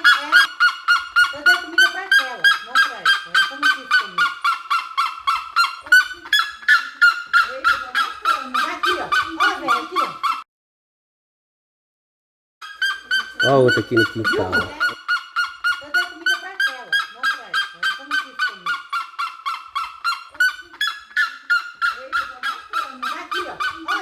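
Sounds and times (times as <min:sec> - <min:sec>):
lower wavering bird call: 0:12.6 - 0:24.0
large birds honking: 0:12.8 - 0:16.5.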